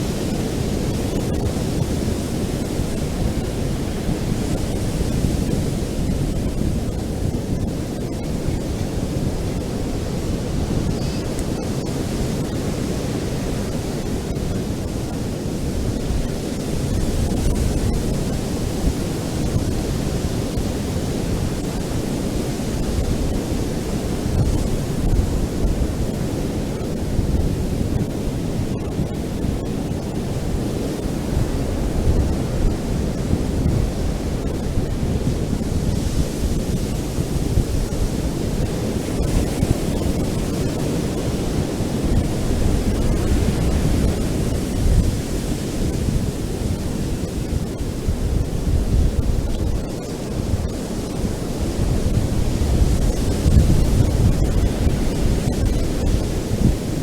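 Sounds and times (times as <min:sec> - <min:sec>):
ocean surf on beach: 0:00.0 - 0:57.0.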